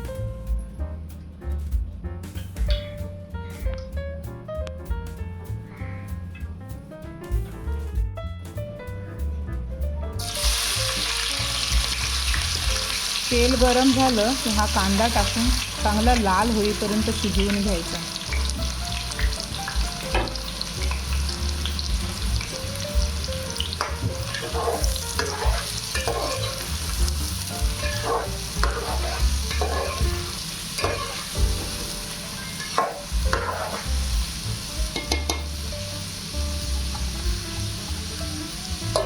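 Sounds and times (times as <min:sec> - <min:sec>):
onion sizzling in hot oil: 0:10.2 - 0:39.0
spatula scraping a pan: 0:23.5 - 0:34.1.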